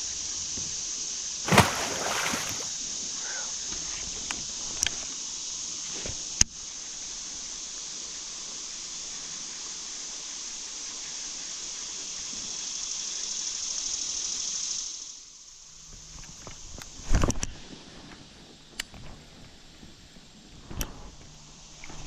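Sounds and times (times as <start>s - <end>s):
river rapids rushing: 1.5s - 2.6s.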